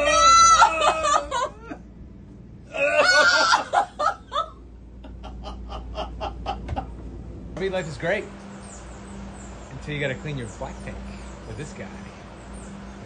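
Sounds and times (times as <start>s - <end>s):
person laughing: 0.4s - 1.8s, 2.7s - 7.0s.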